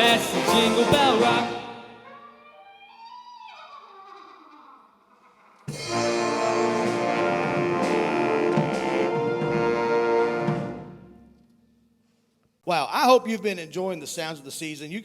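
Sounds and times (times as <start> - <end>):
band music with drums: 0.0 - 1.7, 5.7 - 11.2.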